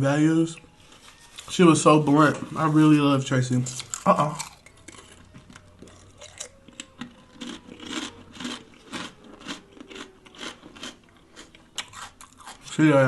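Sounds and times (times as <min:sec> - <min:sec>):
person chewing crunchy food: 0:03.7 - 0:12.8.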